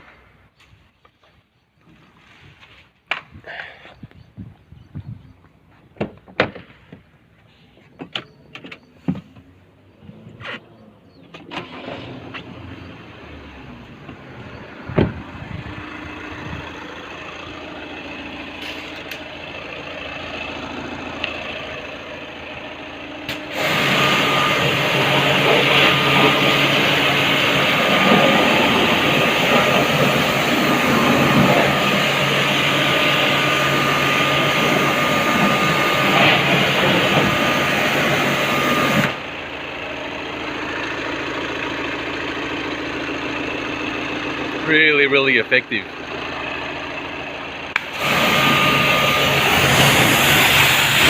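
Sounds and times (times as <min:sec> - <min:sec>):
car engine idling: 0:04.2 - 0:51.0
pressure washer spraying water: 0:23.3 - 0:39.2, 0:47.8 - 0:51.0.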